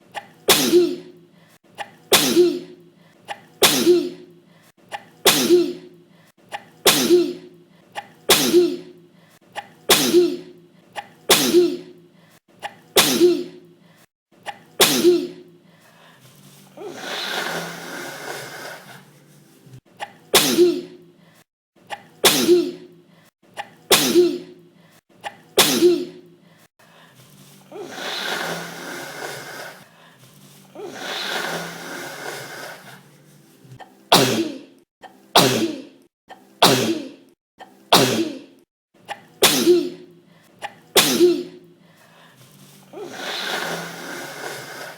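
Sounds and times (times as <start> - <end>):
person sneezing: 0.2 - 1.2, 1.8 - 4.3, 4.9 - 5.9, 6.5 - 9.0, 9.6 - 12.0, 12.6 - 13.7, 14.5 - 15.5, 16.8 - 19.0, 20.0 - 21.0, 21.9 - 22.9, 23.6 - 24.6, 25.2 - 26.3, 27.7 - 29.8, 30.8 - 33.0, 33.8 - 34.8, 35.4 - 36.0, 36.6 - 37.3, 37.9 - 41.6, 42.9 - 44.9.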